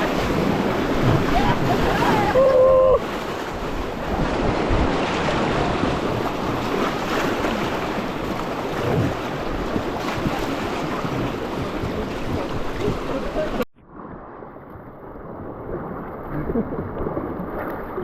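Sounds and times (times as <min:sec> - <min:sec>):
wind buffeting microphone: 0:00.0 - 0:14.0
river water rushing and splashing: 0:00.0 - 0:18.0.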